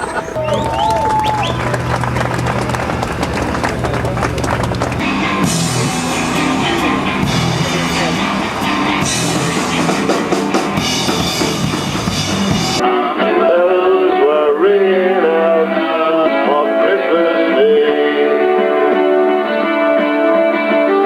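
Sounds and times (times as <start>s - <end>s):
rock music with guitar and drums: 5.0s - 21.0s.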